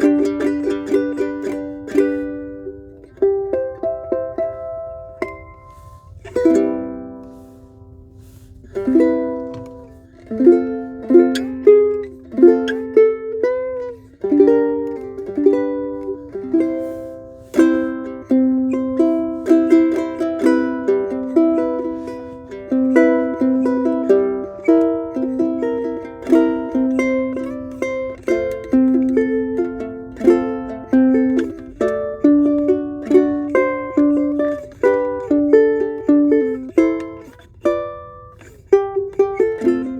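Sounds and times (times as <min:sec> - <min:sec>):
ukulele played fingerstyle: 0:00.0 - 0:39.9.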